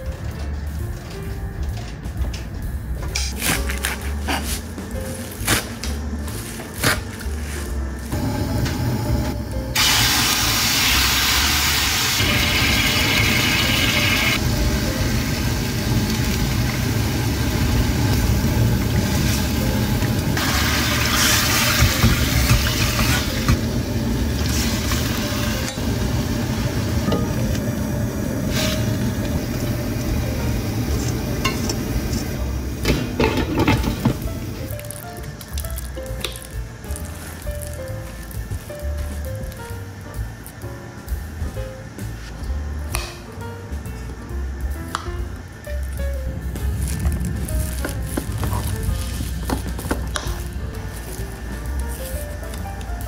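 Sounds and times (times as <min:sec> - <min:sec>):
loud cooking hiss: 0:07.6 - 0:42.2
steady low hum: 0:14.4 - 0:53.0.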